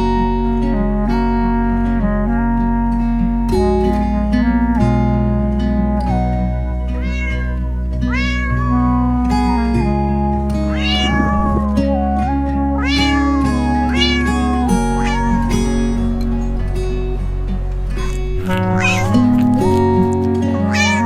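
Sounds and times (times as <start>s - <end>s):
background music: 0.0s - 21.0s
cat meowing: 6.9s - 9.7s, 10.7s - 11.9s, 12.8s - 17.2s, 18.0s - 21.0s.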